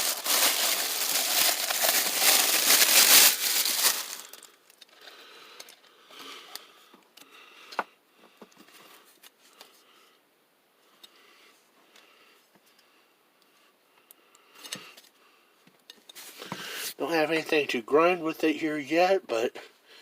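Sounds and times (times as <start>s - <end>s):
packaging crinkling: 0.0s - 4.8s.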